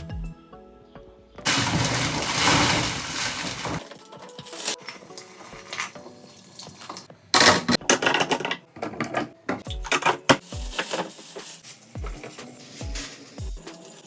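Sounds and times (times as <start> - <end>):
music with deep bass beats: 0.0 - 0.5, 9.6 - 10.8, 11.9 - 13.8
tap water rushing and splashing: 1.5 - 3.8.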